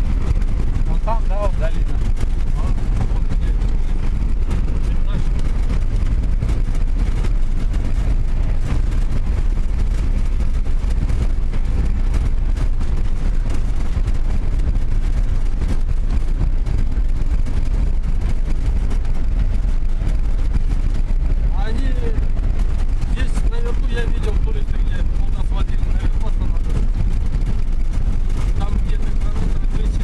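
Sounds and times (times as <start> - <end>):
engine and tyres rumbling: 0.0 - 30.0.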